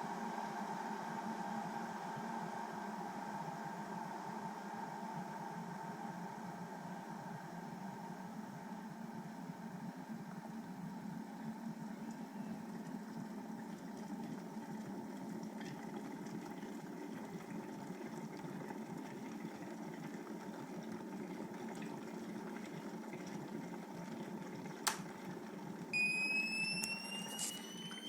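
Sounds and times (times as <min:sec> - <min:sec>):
kettle water boiling: 0:00.1 - 0:28.0
kettle switch click: 0:24.8 - 0:25.0.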